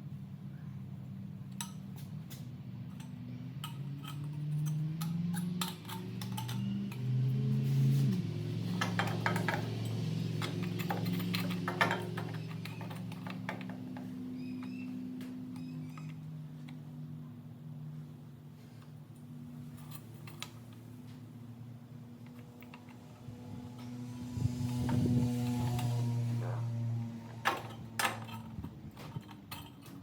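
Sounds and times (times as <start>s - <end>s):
metal parts clinking: 2.8s - 16.3s, 19.6s - 21.0s, 27.3s - 30.0s.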